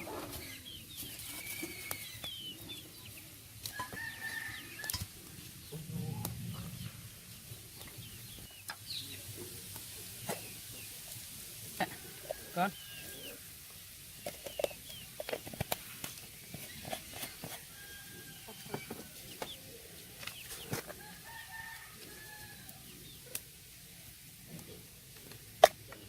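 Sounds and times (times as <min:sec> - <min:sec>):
rooster crowing: 0:03.7 - 0:05.1, 0:17.4 - 0:19.7, 0:20.8 - 0:22.9.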